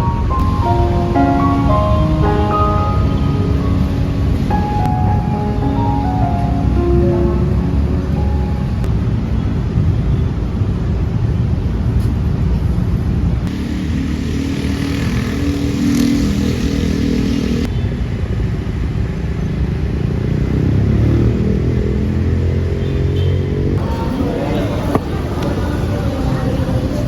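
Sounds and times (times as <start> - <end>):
vehicle engine rumbling: 0.0 - 12.2, 12.8 - 17.7.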